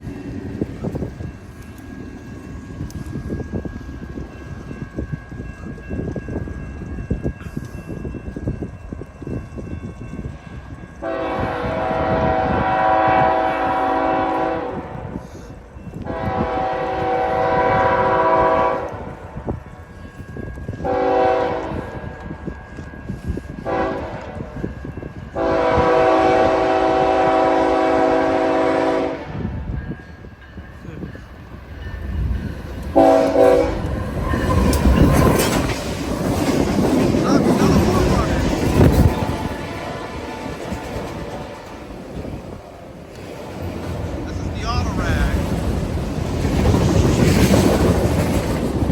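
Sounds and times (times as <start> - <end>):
train rumble and wheel noise: 0.0 - 48.9
locomotive air horn blasts: 11.0 - 15.2, 16.0 - 19.2, 20.9 - 21.9, 23.6 - 24.3, 25.4 - 29.6, 33.0 - 34.5.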